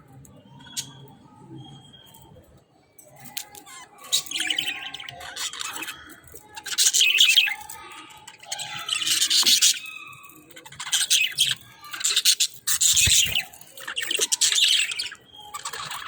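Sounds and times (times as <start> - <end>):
budgerigars chattering and squawking: 3.9 - 16.0.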